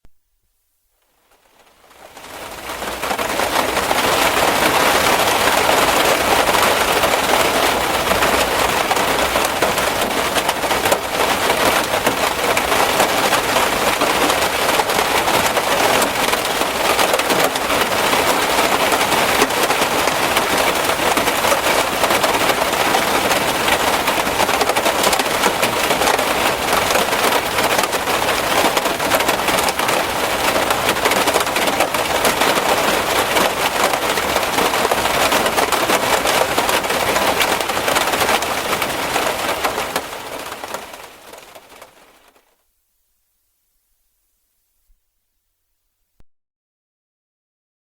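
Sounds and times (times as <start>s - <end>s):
heavy rain drumming on a car: 1.3s - 42.5s.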